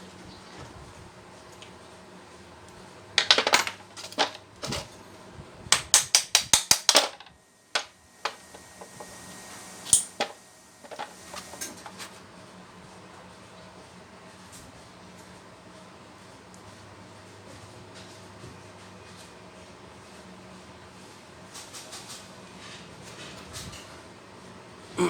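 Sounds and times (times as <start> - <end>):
metal knocks and clatter: 3.2 - 4.9.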